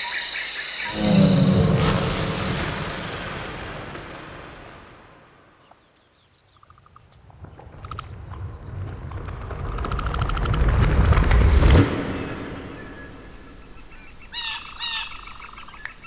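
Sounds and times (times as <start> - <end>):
low rumbling whoosh: 0.9 - 4.6
noisy rushing swell: 0.9 - 5.2.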